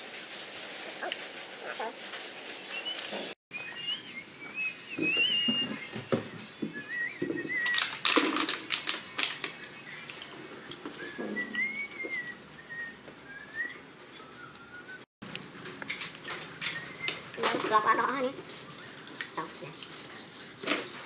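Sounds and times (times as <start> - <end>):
sharp clicks and clinks: 7.6 - 15.0
thin wavering whistle: 11.0 - 15.0.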